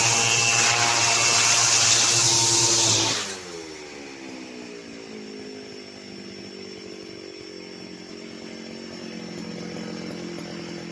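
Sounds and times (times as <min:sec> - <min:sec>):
chainsaw engine winding down: 0:00.0 - 0:04.8, 0:08.4 - 0:10.9.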